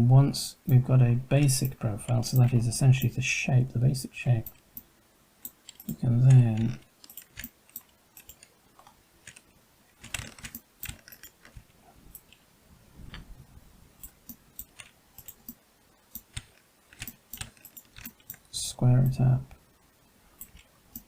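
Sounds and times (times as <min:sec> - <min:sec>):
computer mouse and keyboard clicks: 0:05.4 - 0:12.4, 0:14.0 - 0:18.5, 0:20.4 - 0:21.0.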